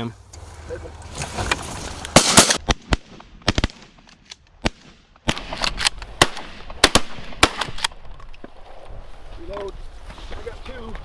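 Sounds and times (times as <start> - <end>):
shotgun shots: 2.2 - 7.9.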